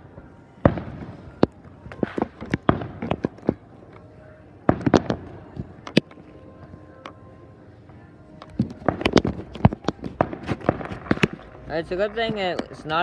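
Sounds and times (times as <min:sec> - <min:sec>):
fireworks bangs and pops: 0:00.6 - 0:03.7, 0:04.7 - 0:06.1, 0:08.5 - 0:13.0.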